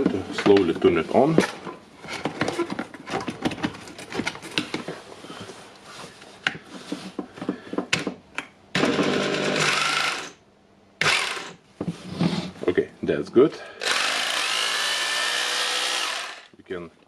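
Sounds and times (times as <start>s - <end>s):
handling clicks and knocks: 0.0s - 5.0s
rotary hammer drill running: 8.8s - 10.4s, 11.0s - 11.6s, 13.8s - 16.5s.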